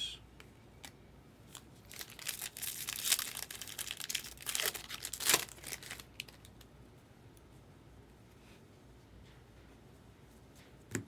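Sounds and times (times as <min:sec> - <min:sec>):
foil wrapper crinkling and tearing: 0:01.5 - 0:06.6.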